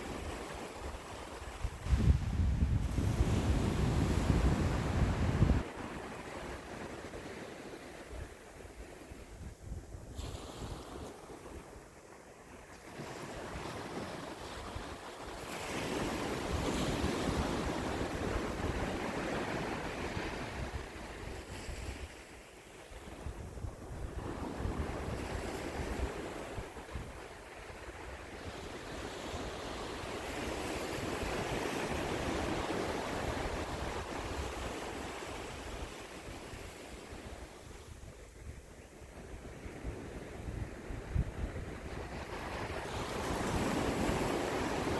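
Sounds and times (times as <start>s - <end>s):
wind rumbling on microphone: 0.0s - 7.3s, 23.0s - 44.9s
sea waves on shore: 40.6s - 44.9s.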